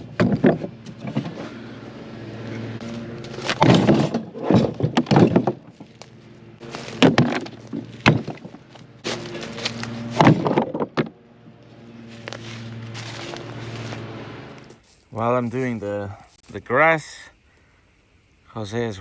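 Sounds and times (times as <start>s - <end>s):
lawn mower engine humming: 0.0s - 18.4s.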